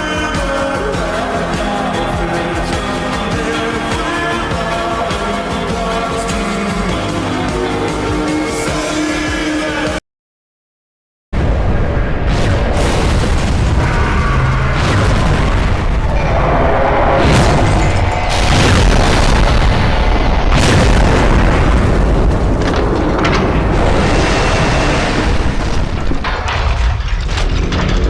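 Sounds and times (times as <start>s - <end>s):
music: 0.0s - 10.0s
booms and explosion rumble: 11.4s - 28.0s.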